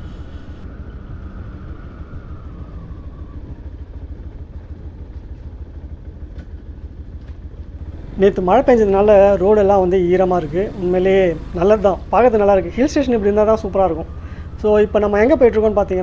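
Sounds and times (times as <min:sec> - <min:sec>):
faint whine dropping in pitch: 0:00.0 - 0:00.6, 0:07.8 - 0:16.0
motorcycle engine rumble: 0:00.0 - 0:00.6, 0:07.8 - 0:16.0.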